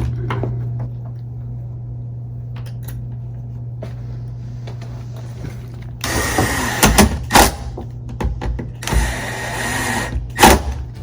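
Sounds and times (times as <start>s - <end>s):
steady low hum: 0.0s - 11.0s
cordless drill driving screw: 6.0s - 7.0s, 8.8s - 10.6s.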